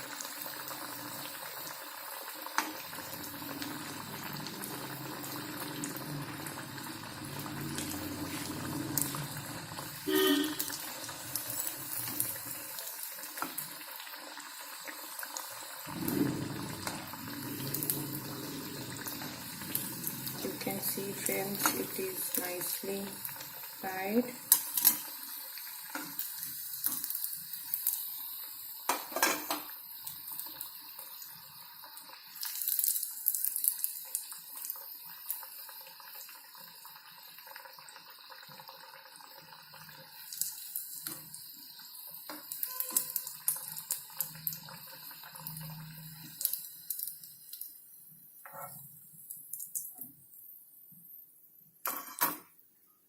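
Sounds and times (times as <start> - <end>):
deep-frying sizzle and pops: 0.0 - 51.2.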